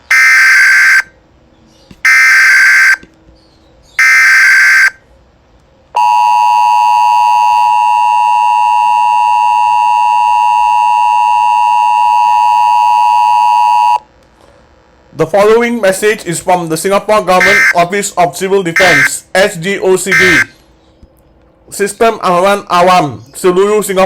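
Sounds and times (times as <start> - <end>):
digital data tone bursts: 0.0 - 1.1, 2.0 - 3.0, 4.0 - 5.0, 17.4 - 17.8, 18.8 - 19.2, 20.1 - 20.5
two-tone attention signal: 17.4 - 17.8, 18.8 - 19.1, 20.1 - 20.5.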